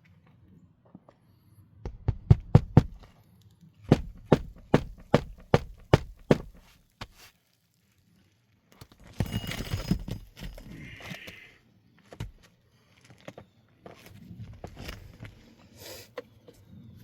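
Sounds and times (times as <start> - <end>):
sharp knocks: 1.9 - 3.1, 3.9 - 6.7.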